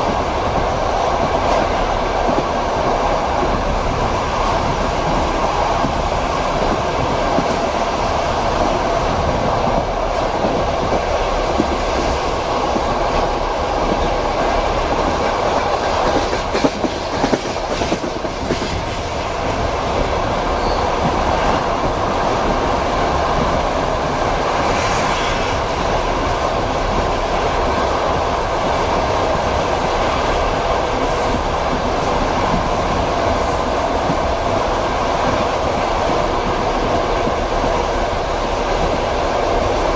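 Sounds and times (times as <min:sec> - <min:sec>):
rumble of moving passenger car: 0:00.0 - 0:39.9
train wheels clattering over rail joints: 0:09.6 - 0:22.7.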